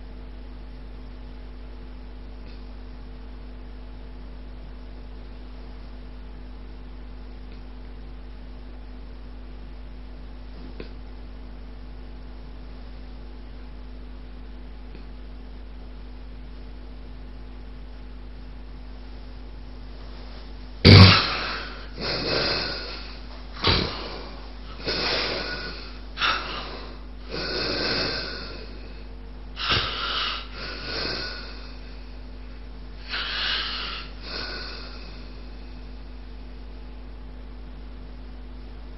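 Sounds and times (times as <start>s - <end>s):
faint hum and hiss: 0.0s - 38.9s
loud snort: 20.8s - 29.0s, 29.6s - 31.9s, 33.0s - 35.4s
heavy snoring breaths: 20.9s - 32.2s, 33.0s - 35.9s.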